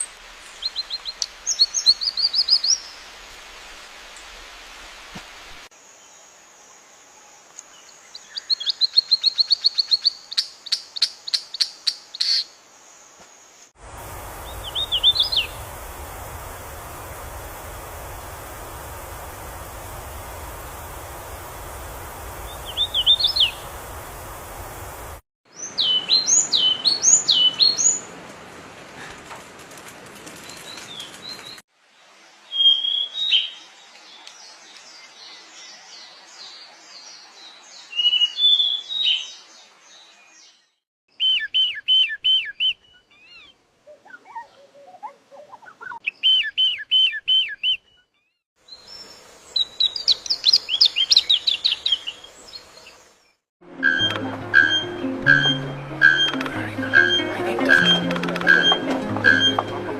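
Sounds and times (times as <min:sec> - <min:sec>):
background hiss: 0:00.0 - 0:25.9, 0:48.6 - 0:59.9
songbirds chirping and singing: 0:14.2 - 0:28.0.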